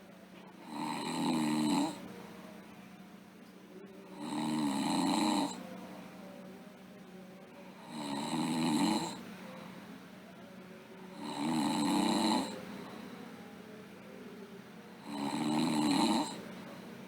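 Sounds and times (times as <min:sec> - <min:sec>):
girl snoring: 0:00.7 - 0:02.0, 0:04.2 - 0:05.6, 0:07.8 - 0:09.2, 0:11.2 - 0:12.6, 0:15.0 - 0:16.4.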